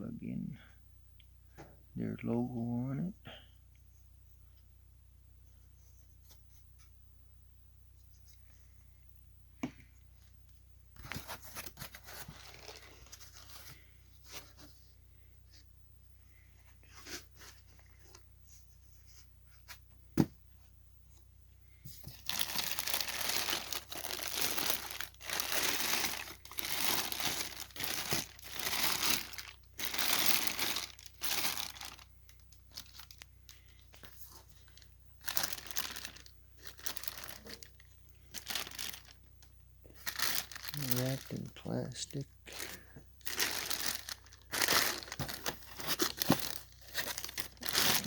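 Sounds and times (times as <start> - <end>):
plastic wrapping crinkling: 11.0 - 14.5, 22.0 - 41.5, 42.4 - 48.0.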